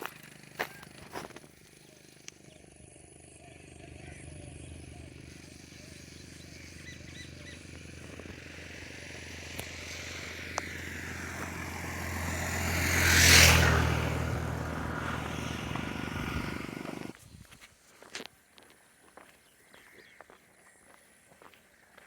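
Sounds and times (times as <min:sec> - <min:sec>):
vehicle passing by: 0:03.3 - 0:17.1.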